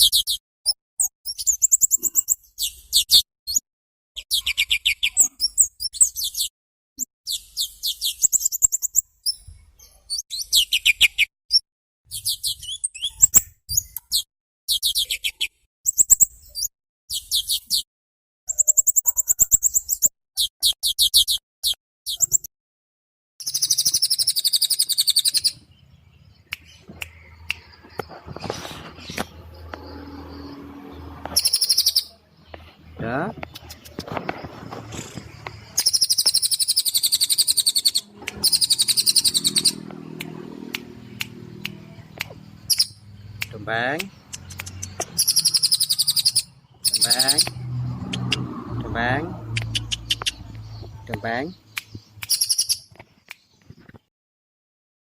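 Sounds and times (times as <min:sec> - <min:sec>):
songbird trilling: 0:23.4 - 0:28.2, 0:28.9 - 0:32.6, 0:34.9 - 0:48.4, 0:49.5 - 0:52.9
harsh bird call: 0:32.9 - 0:47.6.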